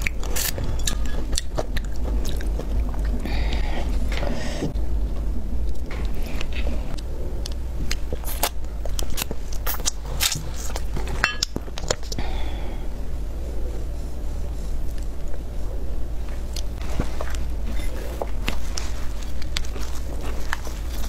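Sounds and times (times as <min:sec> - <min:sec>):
biting and chewing: 0:00.0 - 0:03.3, 0:05.6 - 0:12.2, 0:16.3 - 0:21.0
low hum: 0:00.0 - 0:21.0.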